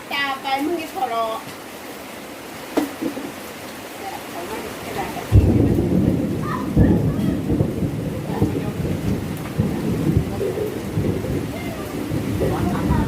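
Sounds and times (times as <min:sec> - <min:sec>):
heavy rain: 0:00.0 - 0:13.0
thunder rumbling: 0:04.5 - 0:13.0.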